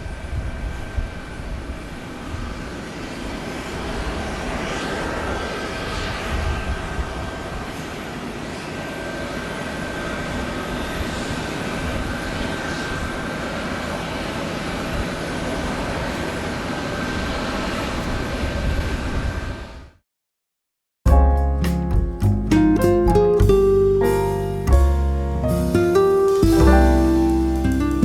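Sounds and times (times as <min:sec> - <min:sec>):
wind buffeting microphone: 0:00.0 - 0:19.9
jet engines running: 0:00.0 - 0:20.0.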